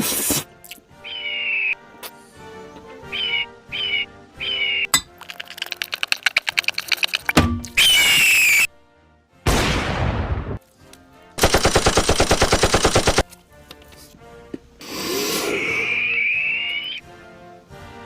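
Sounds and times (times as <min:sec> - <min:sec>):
eagle scream effect: 0:15.5 - 0:17.0.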